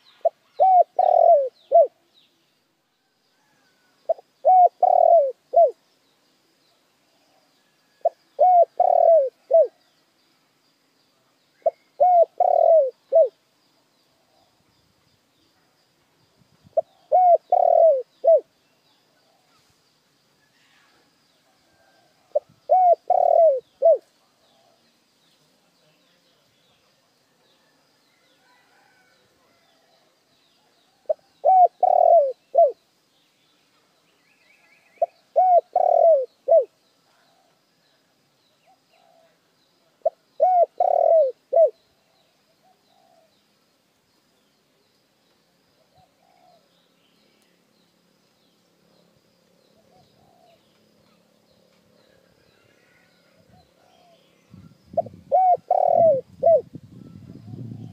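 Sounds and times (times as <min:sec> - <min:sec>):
dove cooing: 0:00.2 - 0:02.0, 0:03.4 - 0:05.8, 0:08.0 - 0:09.8, 0:11.6 - 0:13.4, 0:16.8 - 0:18.5, 0:21.7 - 0:24.8, 0:31.0 - 0:32.8, 0:35.0 - 0:36.7, 0:40.0 - 0:41.8, 0:45.9 - 0:46.7, 0:49.8 - 0:50.6, 0:55.0 - 0:57.9.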